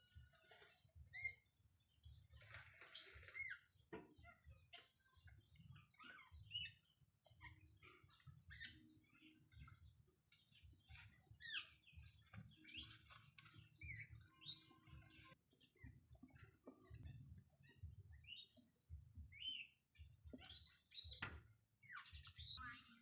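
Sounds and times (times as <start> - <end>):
small birds chirping: 0.0 - 23.0.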